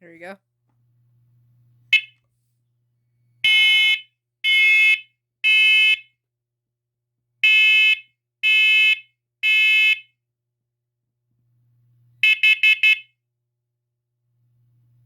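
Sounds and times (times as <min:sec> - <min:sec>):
smoke alarm beeping: 0:01.9 - 0:02.2, 0:03.4 - 0:06.0, 0:12.2 - 0:13.1.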